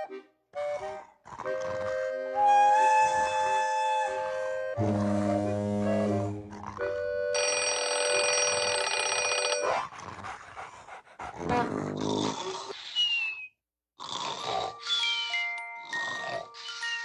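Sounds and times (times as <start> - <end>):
telephone bell ringing: 7.3 - 9.7
falling whistle: 12.8 - 13.6.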